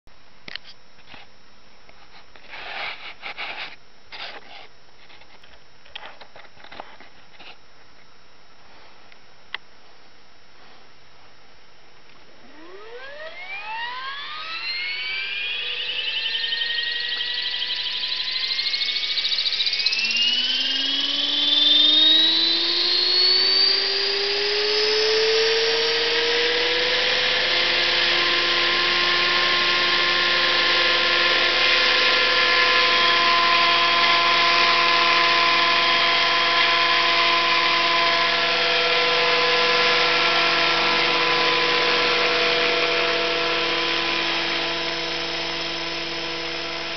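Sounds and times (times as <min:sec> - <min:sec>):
rc helicopter motor whine: 0:12.3 - 0:46.9.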